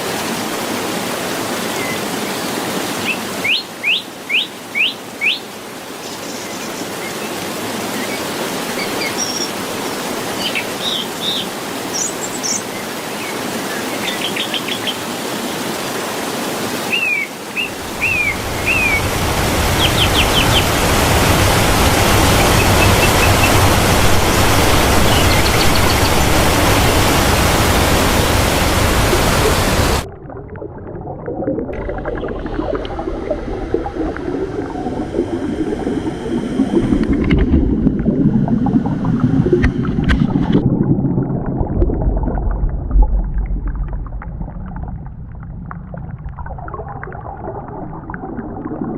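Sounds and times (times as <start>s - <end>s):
waterfall roaring: 6.8s - 30.1s, 31.7s - 40.6s
birds chirping: 16.9s - 20.9s, 21.9s - 23.9s, 24.5s - 27.1s
muffled low rumble: 26.5s - 48.2s.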